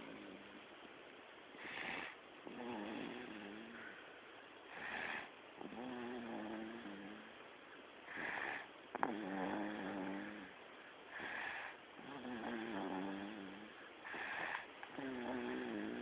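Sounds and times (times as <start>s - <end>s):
baby snoring: 1.6s - 3.9s, 4.7s - 7.3s, 8.1s - 10.5s, 11.1s - 16.0s.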